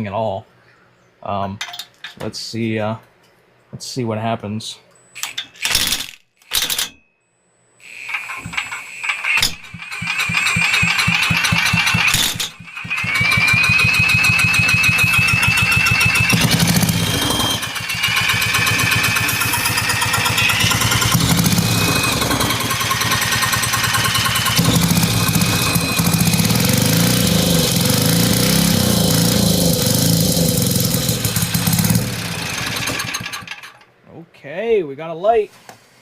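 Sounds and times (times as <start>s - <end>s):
high wavering whine: 7.8s - 29.8s
generator engine sputtering: 8.1s - 33.8s.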